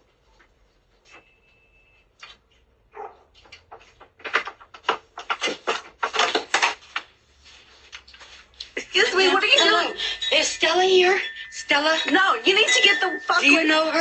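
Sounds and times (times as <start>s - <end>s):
dog barking: 2.9s - 3.3s.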